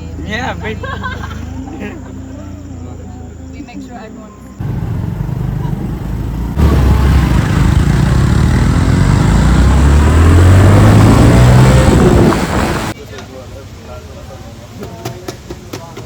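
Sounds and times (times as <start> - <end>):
dense rushing noise: 4.6 - 13.0
motorbike engine accelerating: 4.6 - 13.0.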